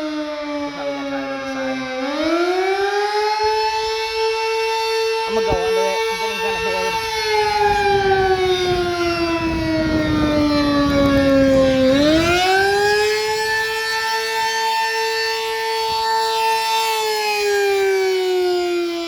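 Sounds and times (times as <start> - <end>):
warning siren wailing: 0.0 - 19.0.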